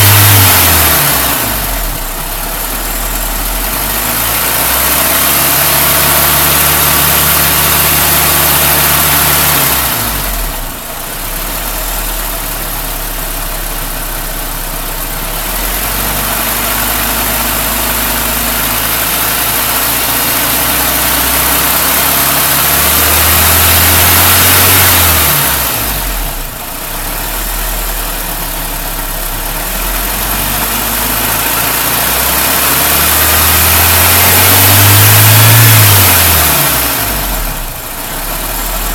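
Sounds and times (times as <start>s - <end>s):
car engine idling and revving: 0.0s - 38.9s.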